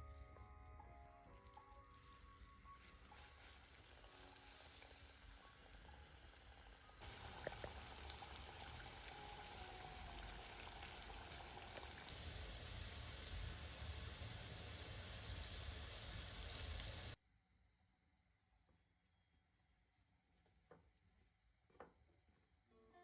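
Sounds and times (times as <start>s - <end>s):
background music: 0.0s - 12.0s
food sizzling with pops: 0.9s - 17.2s.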